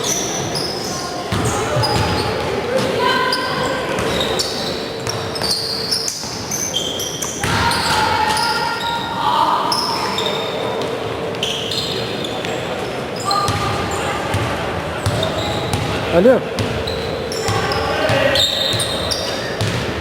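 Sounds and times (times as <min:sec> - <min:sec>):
sneakers squeaking on court: 0:00.0 - 0:20.0
voices echoing in hall: 0:00.0 - 0:20.0
basketball bouncing: 0:13.5 - 0:16.0, 0:16.6 - 0:18.9, 0:19.6 - 0:20.0.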